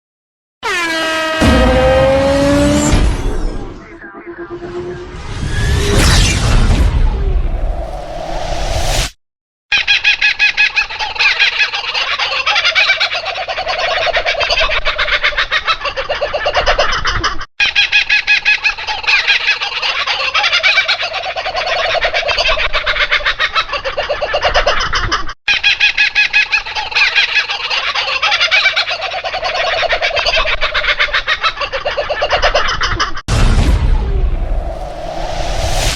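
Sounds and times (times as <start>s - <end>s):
kookaburras laughing: 9.8s - 33.2s.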